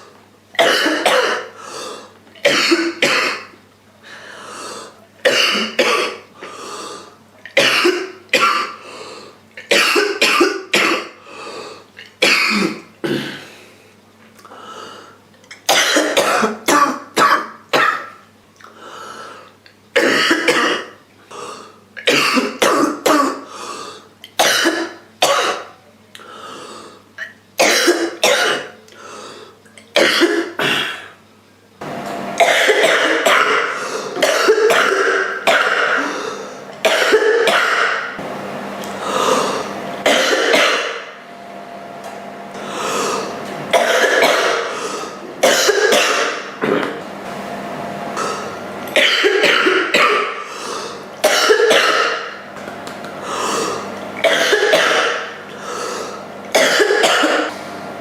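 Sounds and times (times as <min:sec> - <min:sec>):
girl coughing harshly: 0:00.6 - 0:01.6, 0:02.4 - 0:03.6, 0:05.2 - 0:06.3, 0:07.6 - 0:08.8, 0:09.7 - 0:11.2, 0:12.2 - 0:13.5, 0:15.7 - 0:18.2, 0:20.0 - 0:21.0, 0:22.0 - 0:23.5, 0:24.4 - 0:25.8, 0:27.6 - 0:28.8, 0:30.0 - 0:31.2, 0:32.4 - 0:38.2, 0:40.0 - 0:41.1, 0:43.7 - 0:46.9, 0:49.0 - 0:50.5, 0:51.2 - 0:52.4, 0:54.2 - 0:55.4, 0:56.5 - 0:57.5
girl clearing throat: 0:32.4 - 0:36.2, 0:36.8 - 0:38.1, 0:40.0 - 0:41.1, 0:43.7 - 0:44.7, 0:45.4 - 0:46.9, 0:49.0 - 0:50.4, 0:54.2 - 0:55.3, 0:56.6 - 0:57.5.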